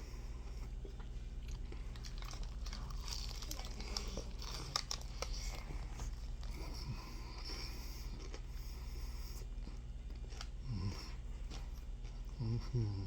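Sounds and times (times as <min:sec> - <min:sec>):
person chewing crunchy food: 0:00.0 - 0:13.0
steady low hum: 0:00.0 - 0:13.0
paper wrapping crinkling: 0:01.5 - 0:06.6.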